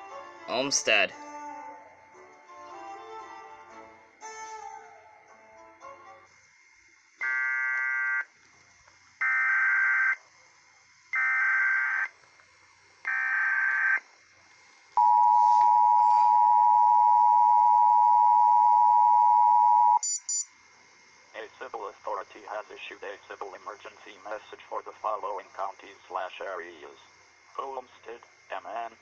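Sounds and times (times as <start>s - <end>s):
shrill digital data tones: 15.0s - 20.5s
two-tone attention signal: 15.0s - 20.5s.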